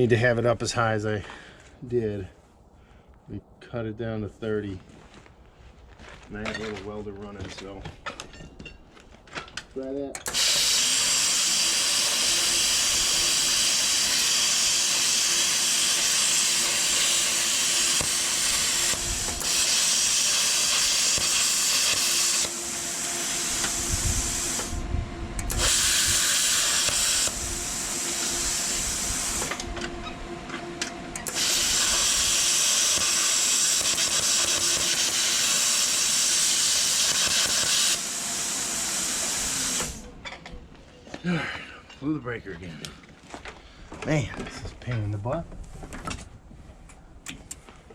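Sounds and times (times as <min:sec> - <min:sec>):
plasma cutter hissing: 0:10.2 - 0:24.8, 0:25.4 - 0:29.7, 0:31.2 - 0:40.1
constant hum: 0:11.4 - 0:47.9.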